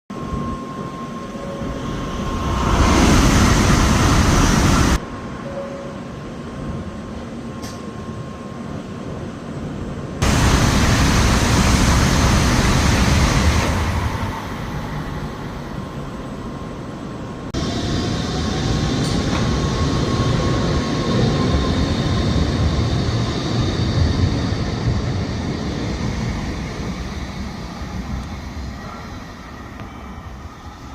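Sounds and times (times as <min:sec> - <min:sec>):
high-speed trains passing: 0:00.1 - 0:30.9
rush of air and wheel noise: 0:01.4 - 0:05.3, 0:09.6 - 0:16.2.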